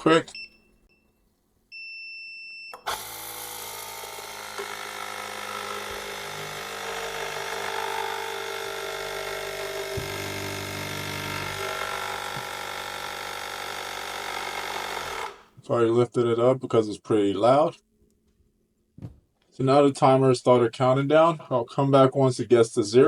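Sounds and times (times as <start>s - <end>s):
bubble remover machine running: 2.8s - 15.5s.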